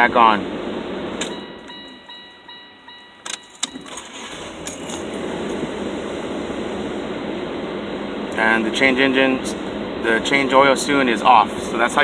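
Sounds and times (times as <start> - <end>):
steady running hum: 0.0 - 3.1, 4.0 - 12.0
electronic chime tone: 1.3 - 3.6
car keys jangling in ignition: 3.2 - 5.7.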